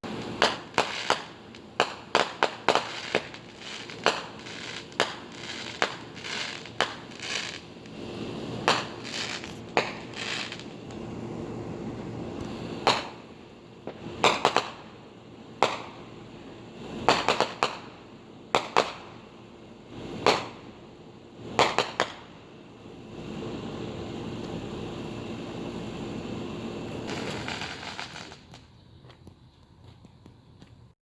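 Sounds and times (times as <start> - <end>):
distant fireworks bangs: 0.0 - 11.0, 12.3 - 15.0, 15.6 - 16.1, 16.9 - 19.2, 20.1 - 20.7, 21.5 - 22.4, 26.9 - 30.8.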